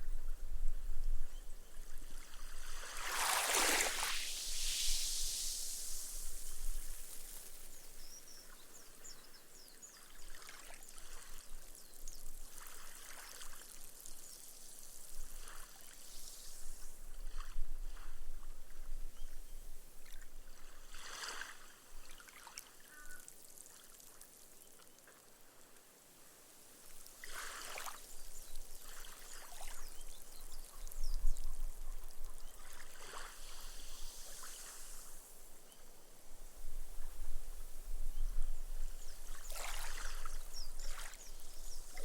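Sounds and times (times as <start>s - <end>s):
ripples lapping on sand: 2.1s - 8.4s, 26.9s - 30.9s, 39.0s - 42.0s
foam fizzing in sand: 2.4s - 8.4s, 12.0s - 17.0s, 26.8s - 30.1s, 32.4s - 35.6s.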